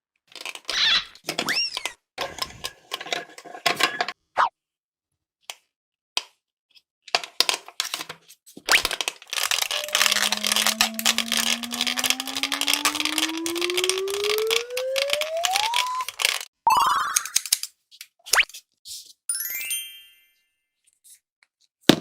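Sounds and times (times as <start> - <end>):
rising whistle-like tone: 9.5 - 16.2.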